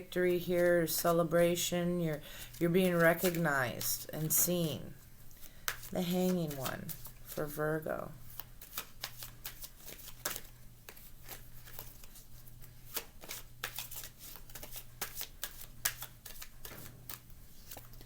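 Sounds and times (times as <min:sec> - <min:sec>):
cards being shuffled: 0:02.4 - 0:07.6, 0:08.3 - 0:18.0.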